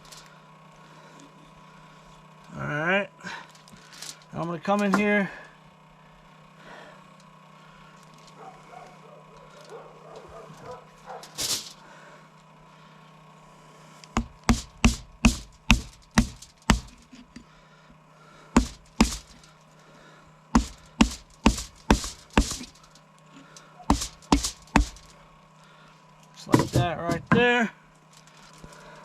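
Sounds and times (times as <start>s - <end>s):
blade chopping through bone: 14.2s - 17.2s, 18.6s - 19.4s, 20.6s - 22.8s, 23.8s - 25.1s.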